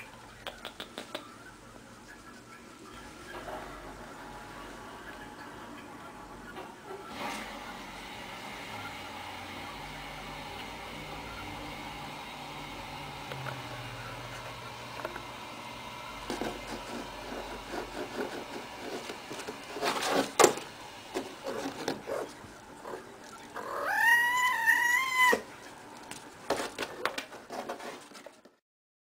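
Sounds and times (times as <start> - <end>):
cat meowing: 23.6 - 25.5.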